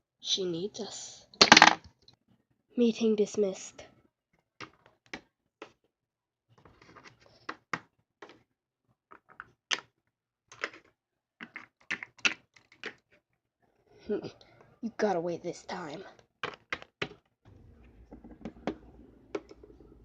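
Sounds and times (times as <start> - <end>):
plastic toys clicking and tapping: 1.4 - 1.9, 9.1 - 13.2, 16.1 - 17.3.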